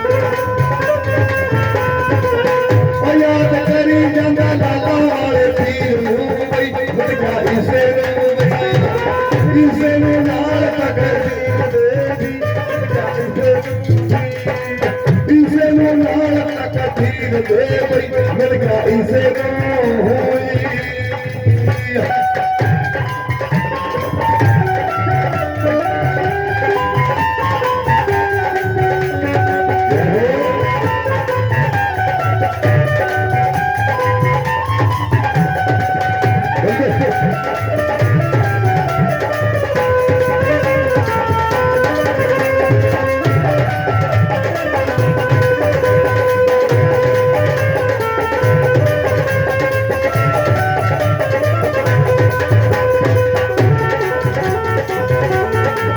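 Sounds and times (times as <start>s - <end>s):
hand drum beat: 0.0s - 55.9s.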